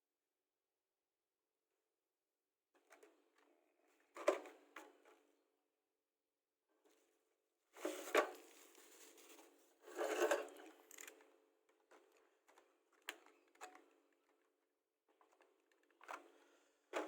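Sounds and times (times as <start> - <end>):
packaging rustling and scraping: 7.8 - 11.1.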